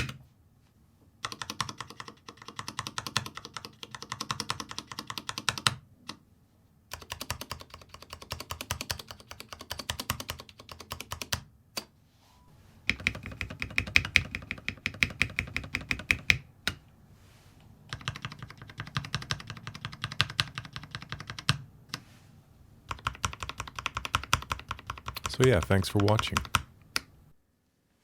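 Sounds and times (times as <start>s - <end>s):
mechanical keyboard typing: 1.2s - 6.2s, 6.9s - 11.9s, 12.9s - 16.8s, 17.9s - 21.6s, 22.9s - 27.1s.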